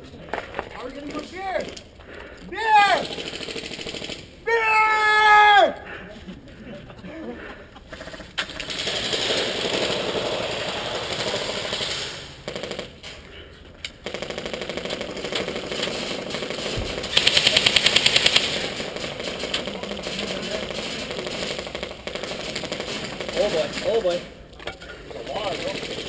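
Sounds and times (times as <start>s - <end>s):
airsoft guns firing bursts: 2.9s - 4.4s, 8.0s - 13.0s, 14.0s - 24.3s, 25.0s - 26.0s.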